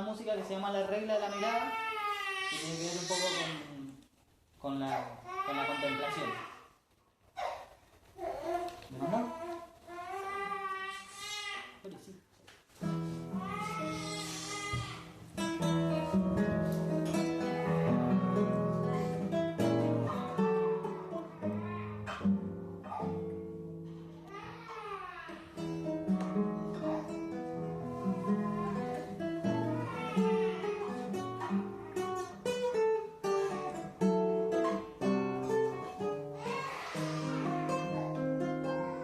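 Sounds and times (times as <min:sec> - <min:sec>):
acoustic guitar music: 0:12.8 - 0:39.0.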